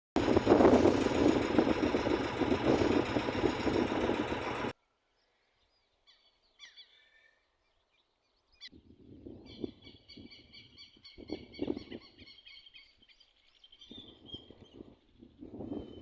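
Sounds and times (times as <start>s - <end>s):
wind buffeting microphone: 0.2s - 4.7s, 8.8s - 12.3s, 13.9s - 16.0s
faint bird chirps: 5.1s - 8.7s.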